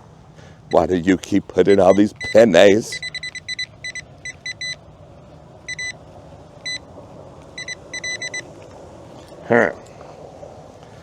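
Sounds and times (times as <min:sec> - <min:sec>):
faint low hum: 0:00.0 - 0:11.0
metal detector beeps: 0:01.6 - 0:04.8, 0:05.7 - 0:06.0, 0:06.6 - 0:06.8, 0:07.6 - 0:08.4.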